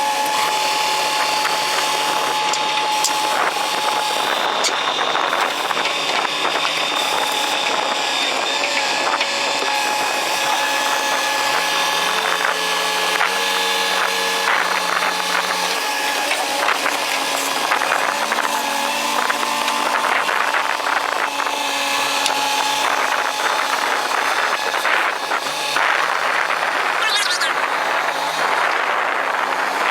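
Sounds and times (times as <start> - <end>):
high mechanical whine: 0.0 - 19.4, 26.6 - 28.7.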